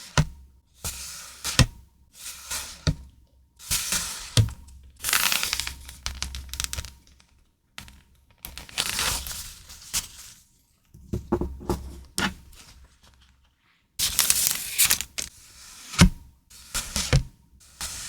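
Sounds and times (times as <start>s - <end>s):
paper and plastic rustling: 5.0s - 15.3s.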